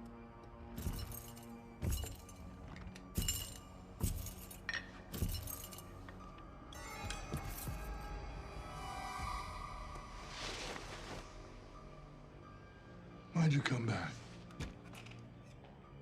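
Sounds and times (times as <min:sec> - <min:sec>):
quiet music score: 0:00.0 - 0:16.0
glass and metal clinking: 0:00.8 - 0:08.0.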